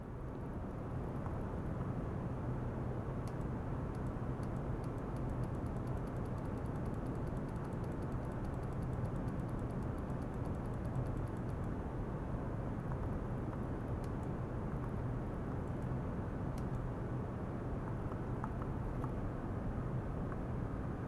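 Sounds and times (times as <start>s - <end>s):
faint rapid ticking: 3.3s - 11.8s.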